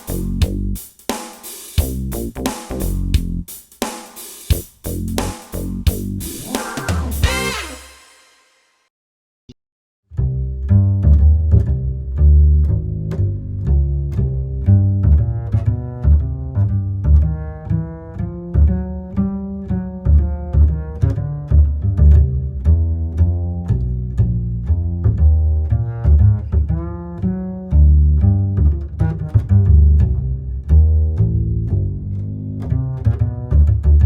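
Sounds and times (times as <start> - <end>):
pulsing bass line: 0.0 - 0.8, 1.8 - 3.5, 4.5 - 7.8, 10.2 - 34.0
fast melody: 4.5 - 8.5.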